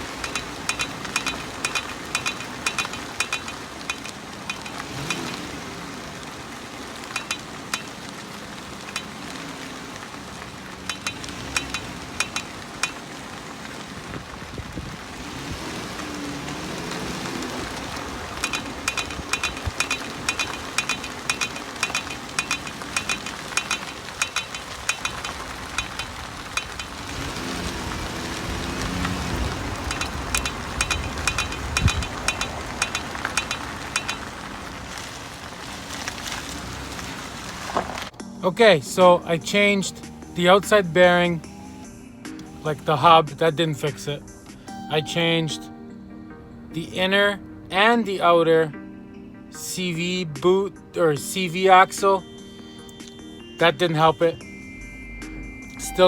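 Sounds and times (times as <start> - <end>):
metallic wheel clicking: 0.0 - 5.5, 7.1 - 8.1, 8.8 - 9.3, 10.8 - 13.1, 17.7 - 35.1.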